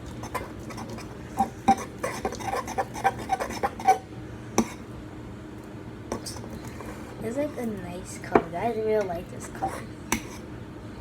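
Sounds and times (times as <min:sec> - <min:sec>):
utensil clinking in a bowl: 0:00.0 - 0:04.0.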